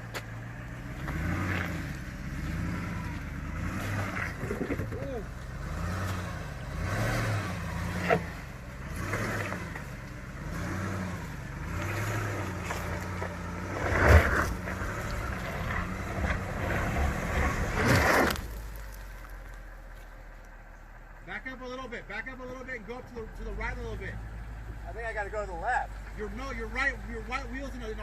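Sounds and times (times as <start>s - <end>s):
truck engine revving: 0.0s - 19.8s.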